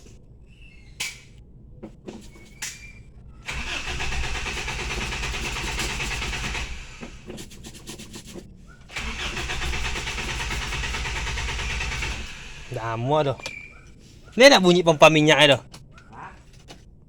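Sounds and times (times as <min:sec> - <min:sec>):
starter motor cranking engine: 0:03.4 - 0:07.4, 0:08.9 - 0:13.3.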